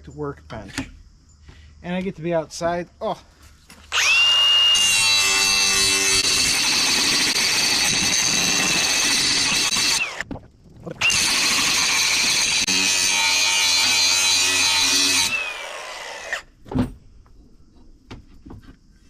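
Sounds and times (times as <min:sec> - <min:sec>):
electric grinder whining: 0:03.9 - 0:10.2, 0:11.0 - 0:16.4.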